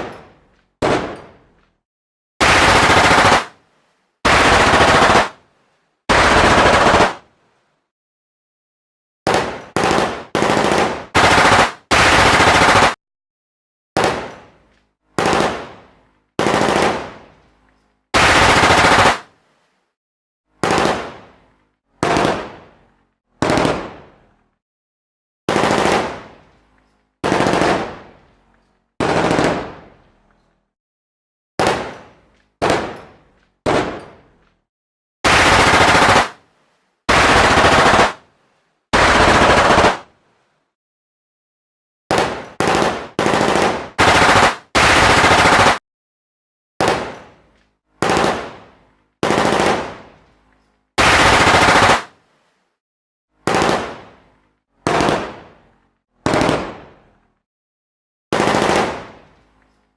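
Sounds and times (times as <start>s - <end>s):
machine gun bursts: 2.4s - 3.5s, 4.3s - 5.3s, 6.1s - 7.2s, 35.3s - 36.4s, 37.1s - 38.2s, 39.0s - 40.0s.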